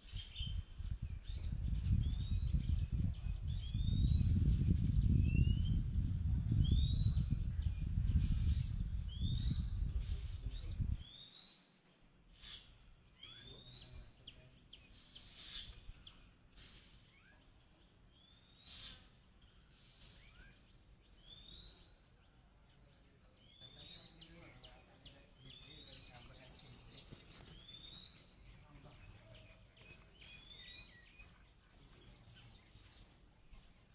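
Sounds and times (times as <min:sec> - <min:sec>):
bird calling with upward whistles: 0:21.2 - 0:22.0.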